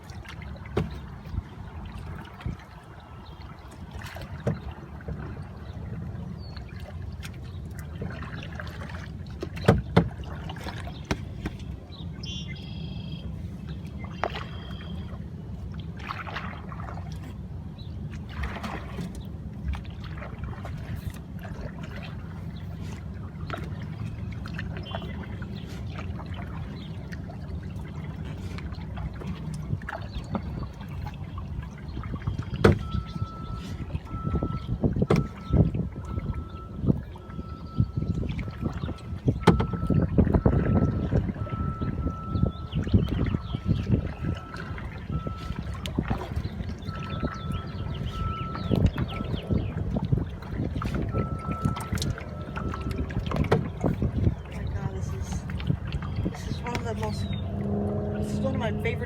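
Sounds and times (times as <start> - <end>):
paddle strokes splashing: 0.0 - 59.0
water trickling: 0.0 - 59.0
low rumble: 19.3 - 59.0.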